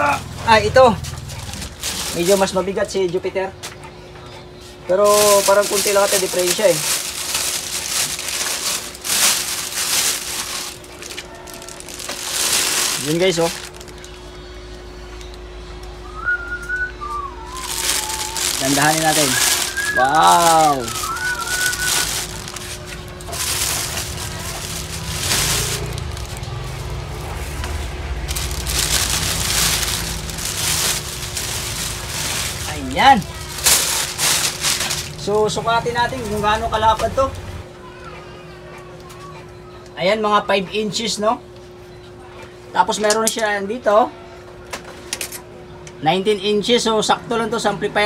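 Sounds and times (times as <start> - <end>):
packing material rustling: 1.2 - 2.8, 4.9 - 14.3, 17.5 - 36.6.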